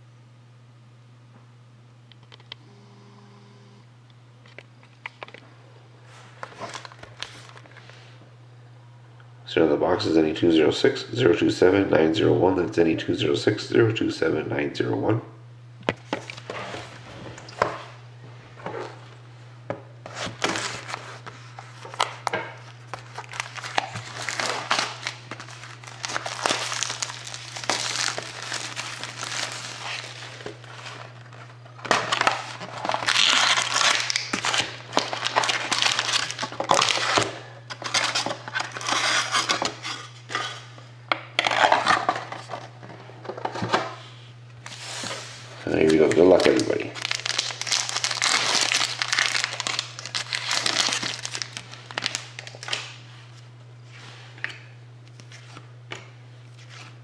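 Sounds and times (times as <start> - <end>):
low electrical hum: 0.0 - 57.0
plastic wrap crinkling: 20.1 - 39.5, 44.7 - 53.0.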